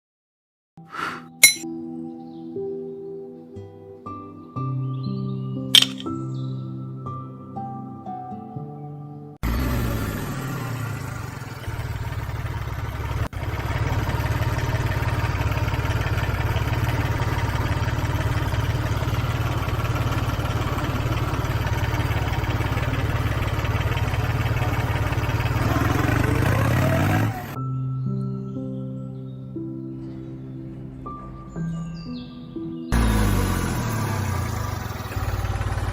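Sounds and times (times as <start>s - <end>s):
engine idling: 9.4s - 27.6s, 33.0s - 35.9s
engine revving: 9.4s - 27.6s, 32.9s - 35.9s.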